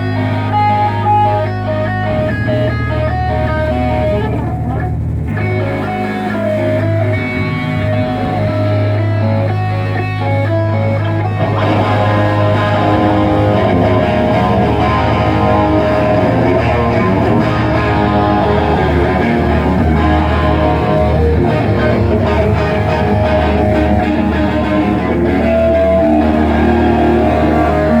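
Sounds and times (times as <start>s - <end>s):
bass guitar: 0.0s - 28.0s
electric guitar: 0.0s - 28.0s
live rock band playing: 10.8s - 28.0s.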